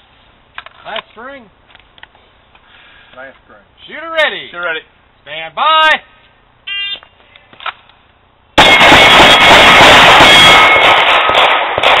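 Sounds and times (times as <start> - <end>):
pistol shots: 8.6 - 12.0.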